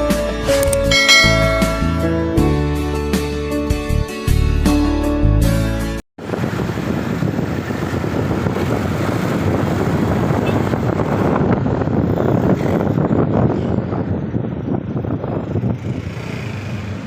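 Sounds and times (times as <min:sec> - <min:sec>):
vehicle road noise: 0:00.0 - 0:03.2, 0:06.2 - 0:17.0
wind buffeting microphone: 0:06.2 - 0:17.0.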